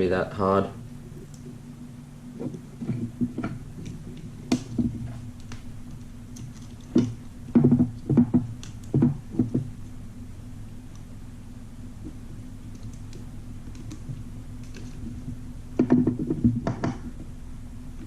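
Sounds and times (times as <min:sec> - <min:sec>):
steady low hum: 0:00.0 - 0:18.0
light clicks and knocks of parts: 0:02.4 - 0:10.0.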